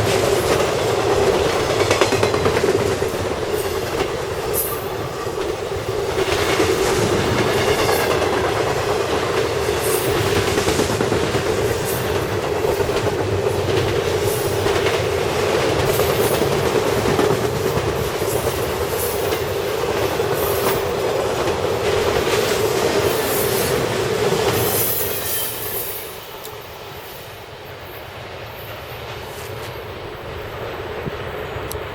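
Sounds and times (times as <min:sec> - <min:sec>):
train wheels clicking over rail joints: 0:00.0 - 0:28.0.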